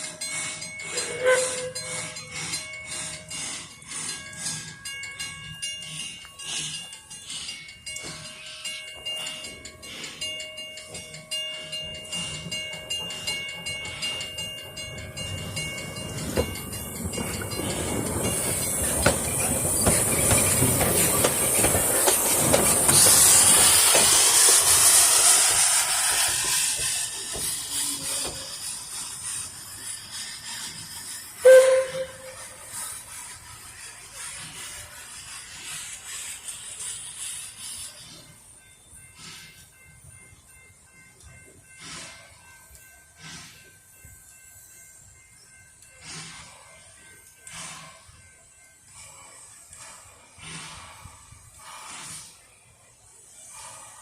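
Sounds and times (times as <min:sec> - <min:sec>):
level crossing bells ringing: 0:00.0 - 0:24.8
steam hiss: 0:00.0 - 0:54.0
train wheels on rails: 0:00.0 - 0:54.0
sharp loud whistle blast: 0:31.4 - 0:32.3.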